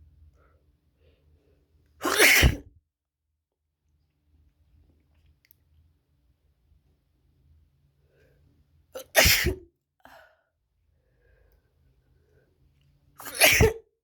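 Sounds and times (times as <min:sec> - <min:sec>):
person sneezing wetly: 0:02.0 - 0:02.7, 0:09.0 - 0:09.6, 0:13.2 - 0:13.8.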